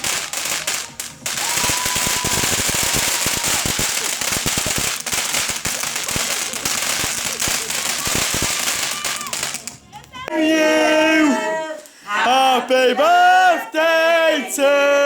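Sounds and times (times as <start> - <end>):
fireworks crackling: 0.0 - 10.4.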